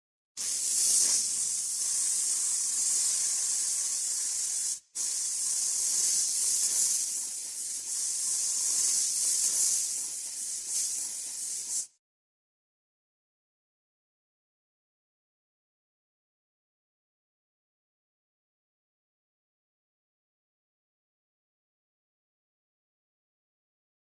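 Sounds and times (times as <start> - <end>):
compressed air hissing from nozzle: 0.4 - 12.0.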